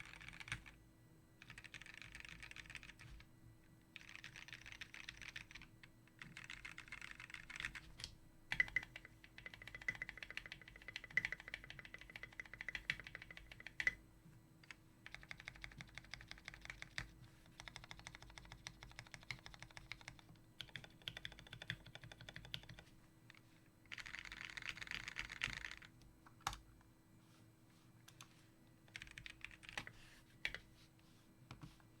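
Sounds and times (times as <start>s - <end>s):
mechanical keyboard typing: 0.0s - 0.8s, 1.4s - 3.1s, 4.0s - 7.8s, 8.5s - 14.0s, 15.0s - 22.8s, 23.9s - 26.6s, 28.9s - 30.6s.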